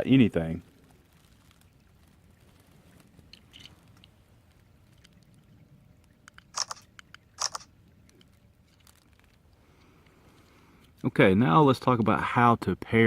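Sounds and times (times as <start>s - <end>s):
crunching clicks: 6.1s - 9.4s
tripod legs clicking: 6.3s - 7.7s.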